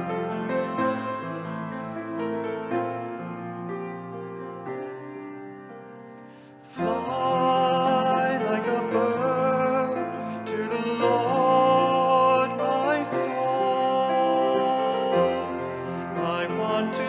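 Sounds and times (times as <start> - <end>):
quiet piano: 0.0 - 17.0
person singing with vibrato: 6.6 - 17.0.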